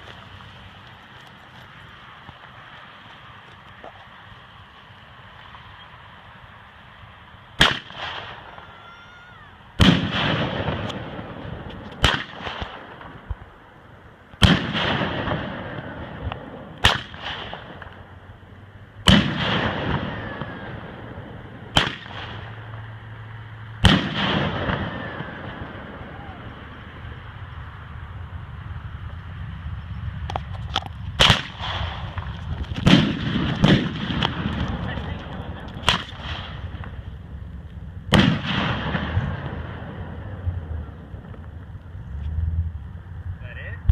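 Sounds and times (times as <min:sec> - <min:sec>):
firework shells launching and bursting: 0:30.2 - 0:37.2, 0:38.1 - 0:40.3.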